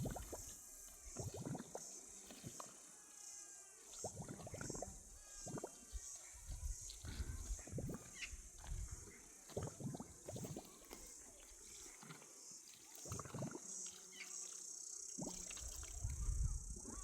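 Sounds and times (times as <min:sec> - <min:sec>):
high insect chorus: 0:00.0 - 0:17.0.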